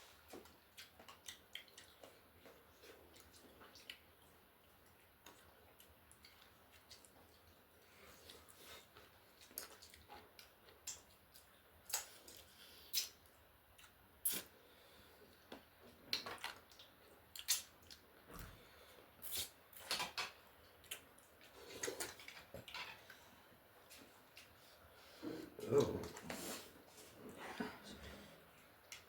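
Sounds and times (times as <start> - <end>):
slurping and chewing: 0.0 - 19.8, 20.6 - 27.1
mouth clicks and smacks: 11.9 - 14.5, 16.1 - 18.0.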